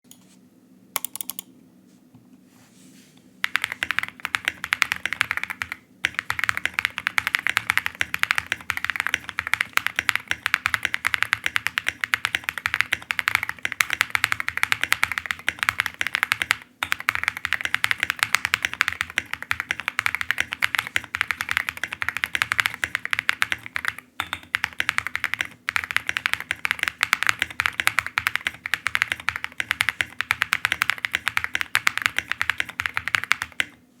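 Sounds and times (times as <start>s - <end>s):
mechanical keyboard typing: 1.0s - 1.4s, 3.4s - 33.8s.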